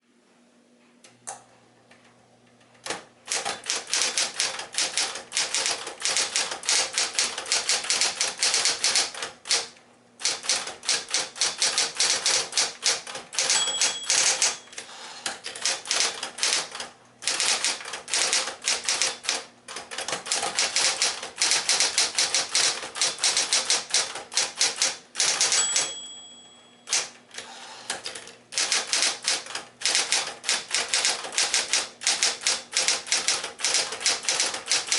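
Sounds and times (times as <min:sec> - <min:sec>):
typewriter keystrokes clattering: 0:02.8 - 0:26.2, 0:26.9 - 0:27.2, 0:27.9 - 0:34.9
typewriter motor humming: 0:02.9 - 0:26.0, 0:26.9 - 0:34.9
typewriter bell ringing: 0:13.4 - 0:15.0, 0:25.2 - 0:27.1.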